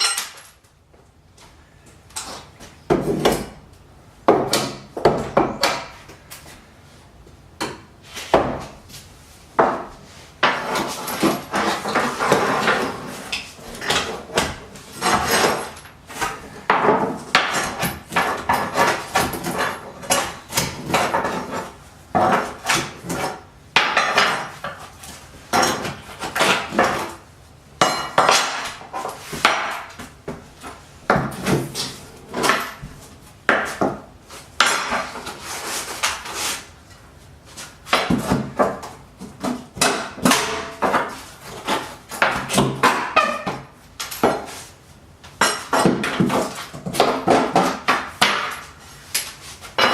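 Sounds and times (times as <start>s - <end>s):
hammer striking nails into wood: 47.0s - 48.6s.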